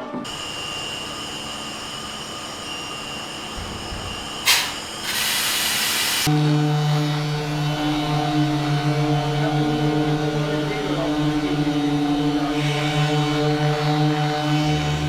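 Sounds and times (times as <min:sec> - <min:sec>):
machine noise with high tone: 0:00.0 - 0:15.0
sharp hiss: 0:04.5 - 0:06.3.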